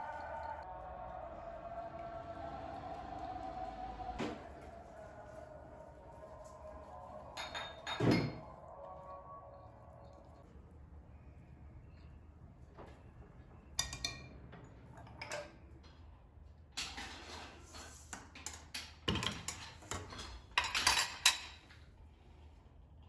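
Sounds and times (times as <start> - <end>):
dishes and utensils clinking: 7.0 - 8.6, 13.8 - 14.3, 16.8 - 21.8.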